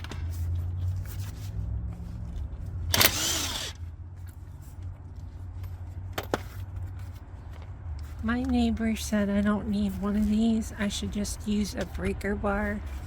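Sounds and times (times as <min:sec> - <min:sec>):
impact wrench burst: 0:02.9 - 0:03.8.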